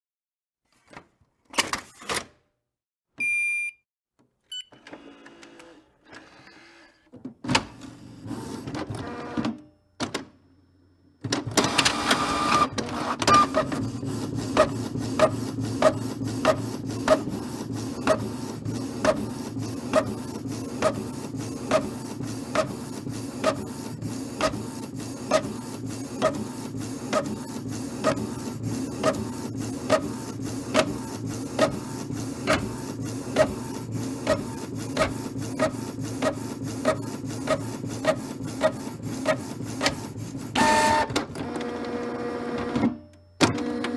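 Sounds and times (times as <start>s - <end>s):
printer whirring and humming: 7.5s - 9.6s, 11.2s - 43.9s
printer clicking: 11.2s - 43.9s.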